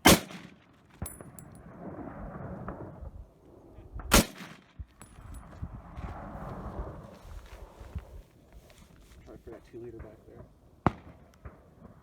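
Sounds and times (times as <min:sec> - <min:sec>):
rifle shot: 0:00.0 - 0:01.4, 0:04.1 - 0:04.8.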